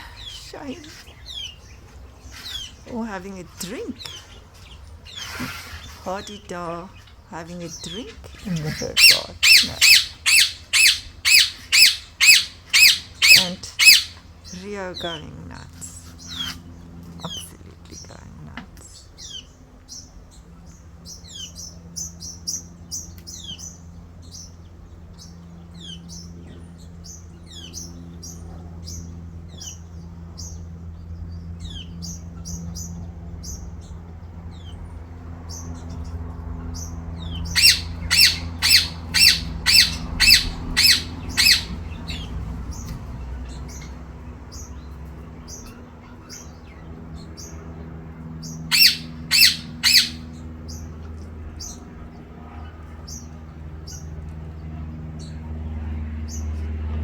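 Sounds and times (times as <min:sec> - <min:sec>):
small birds chirping: 0:00.0 - 0:56.9
bird squawking harshly: 0:08.7 - 0:14.2, 0:37.4 - 0:42.3, 0:48.7 - 0:50.3.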